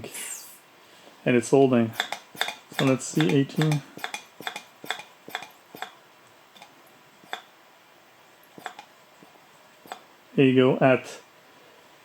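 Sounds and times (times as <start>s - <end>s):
hand vacuum pump clicks: 2.0s - 6.0s, 7.3s - 7.5s, 8.6s - 8.9s.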